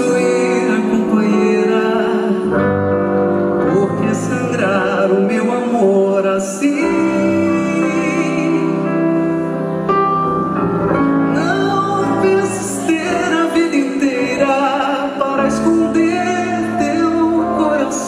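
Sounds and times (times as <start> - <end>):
person singing with vibrato: 0.0 - 9.8, 11.2 - 18.0
sustained instrumental accompaniment: 6.9 - 18.0.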